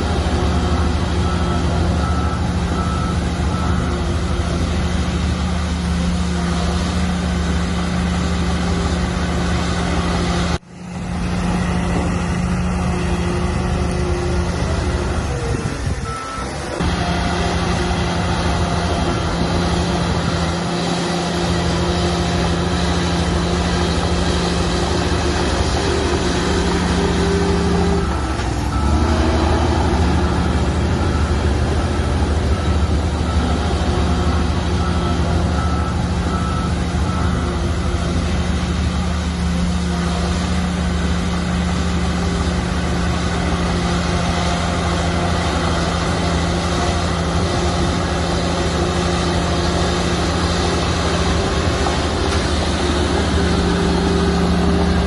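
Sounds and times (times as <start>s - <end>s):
heavy diesel engine running: 0.0s - 55.0s
high reversing beeps: 0.3s - 5.1s, 16.0s - 39.0s.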